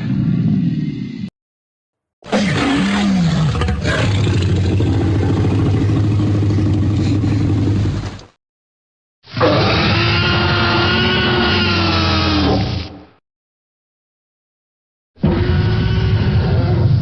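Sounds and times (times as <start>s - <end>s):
dinosaur roar: 2.3s - 8.2s, 9.3s - 13.0s, 15.2s - 17.0s.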